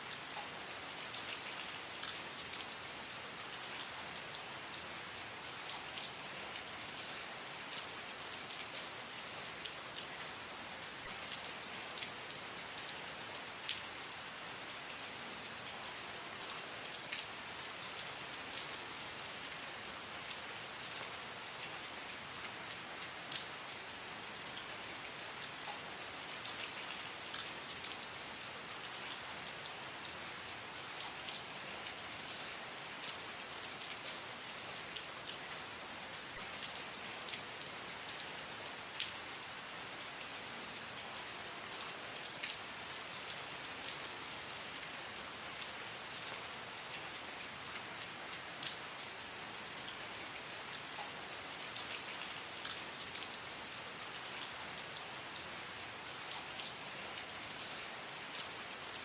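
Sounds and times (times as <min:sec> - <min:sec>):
steady rain hiss: 0:00.0 - 0:59.0
raindrops ticking on a surface: 0:00.1 - 0:59.0.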